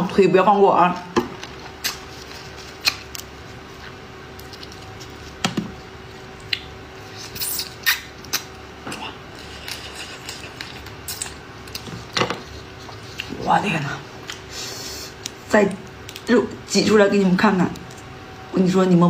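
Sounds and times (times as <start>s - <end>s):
wet squishes and sucking: 6.4s - 8.6s.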